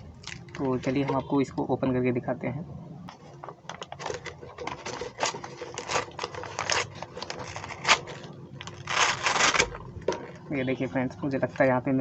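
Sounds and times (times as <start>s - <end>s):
plastic wrapper crinkling and tearing: 0.0s - 1.3s, 3.1s - 10.6s.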